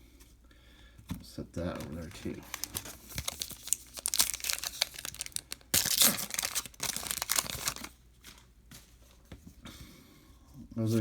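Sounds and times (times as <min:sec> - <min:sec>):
cards rustling: 0:01.8 - 0:08.4
wrapper tearing and crinkling: 0:02.1 - 0:08.0.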